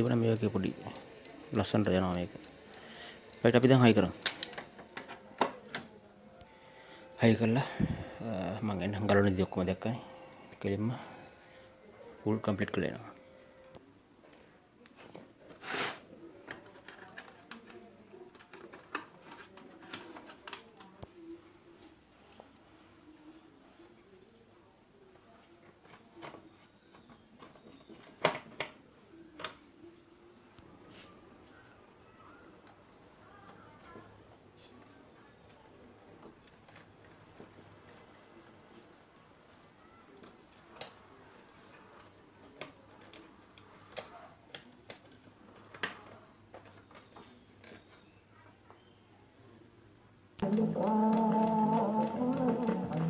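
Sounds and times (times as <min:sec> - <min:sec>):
radio parts clicking and knocking: 0:00.0 - 0:05.6
faint steady hum: 0:00.0 - 0:14.0, 0:50.4 - 0:53.0.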